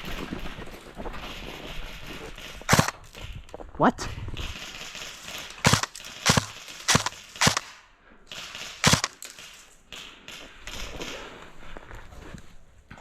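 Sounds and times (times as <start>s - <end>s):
airsoft gun firing single shots: 2.7s - 3.3s, 4.5s - 10.1s.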